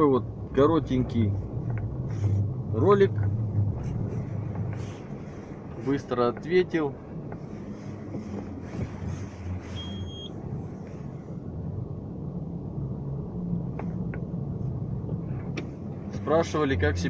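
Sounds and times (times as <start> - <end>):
car interior road rumble: 0.0 - 17.0
short high beep: 9.8 - 10.3.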